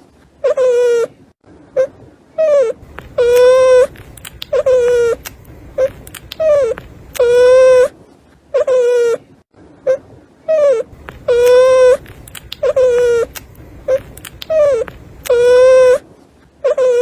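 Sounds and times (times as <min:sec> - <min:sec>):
puppy whining and yelping: 0:01.8 - 0:07.9, 0:09.9 - 0:16.0, 0:16.7 - 0:17.0.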